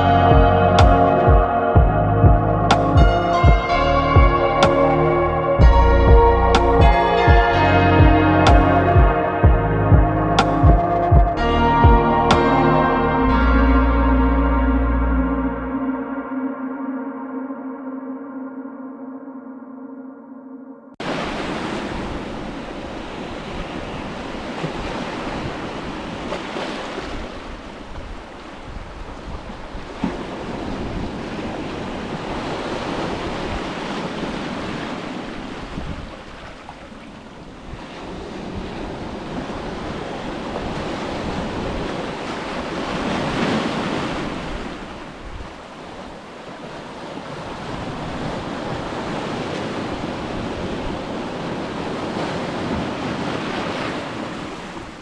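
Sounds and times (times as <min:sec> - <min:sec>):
ocean waves breaking on beach: 0:21.0 - 0:55.0
wind rumbling on microphone: 0:21.2 - 0:55.0.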